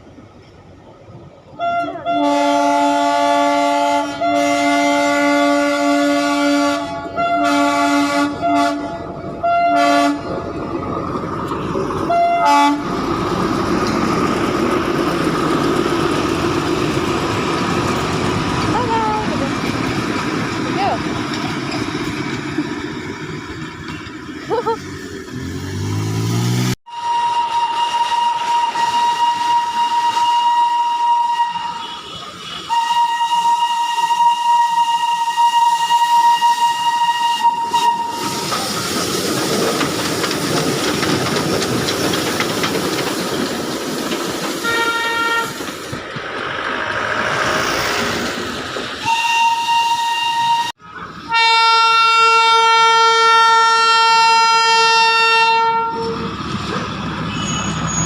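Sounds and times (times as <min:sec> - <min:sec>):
hissing train running noise: 0:00.0 - 0:58.0
train whistle blasts: 0:01.6 - 0:10.3, 0:12.1 - 0:12.9, 0:26.9 - 0:38.5, 0:44.6 - 0:45.6, 0:49.0 - 0:56.2, 0:57.3 - 0:58.0
low-pitched horn blast: 0:01.6 - 0:10.4, 0:12.1 - 0:13.0, 0:44.6 - 0:45.6, 0:49.0 - 0:56.3.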